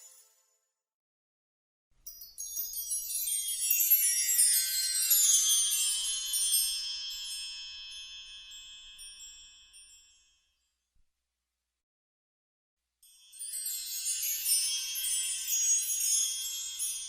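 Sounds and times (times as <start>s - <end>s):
shimmering magical chime: 2.4s - 10.3s, 13.0s - 17.0s.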